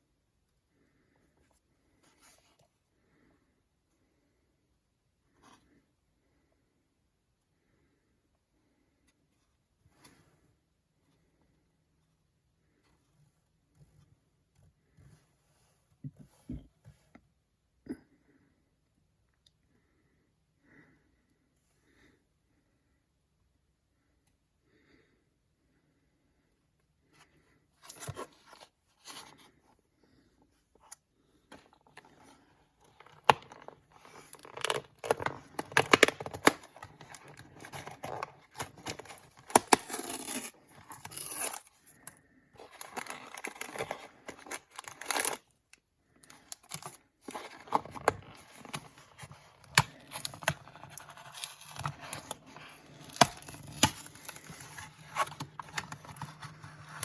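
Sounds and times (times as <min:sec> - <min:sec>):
packaging tearing and crinkling: 0:32.9 - 0:41.8, 0:42.6 - 0:45.4, 0:46.4 - 0:57.0.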